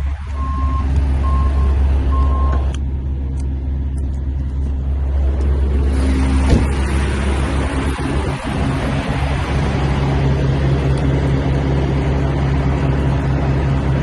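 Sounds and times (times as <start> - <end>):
truck engine idling: 0.0 - 14.0
beeping alarm: 0.4 - 2.7.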